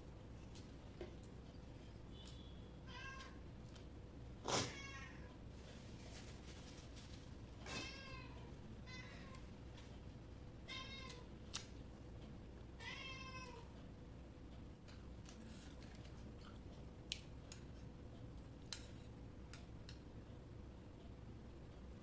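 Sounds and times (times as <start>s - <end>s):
cat meowing: 2.8s - 3.4s, 4.6s - 5.3s, 12.8s - 13.7s.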